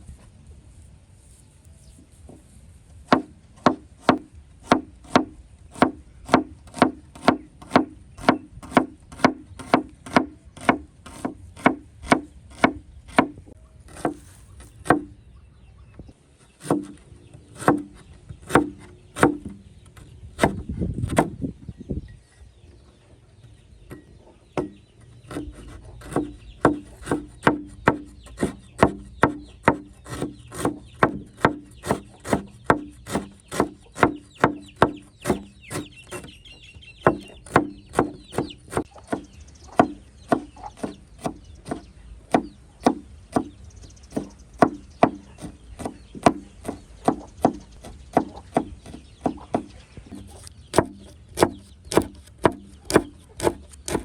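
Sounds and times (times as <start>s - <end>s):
knife chopping on wooden board: 3.1s - 13.3s, 13.9s - 15.1s, 16.6s - 17.0s, 17.6s - 19.6s, 24.6s - 36.3s, 37.0s - 43.5s, 44.1s - 54.0s
scraping rustle: 13.8s - 14.9s.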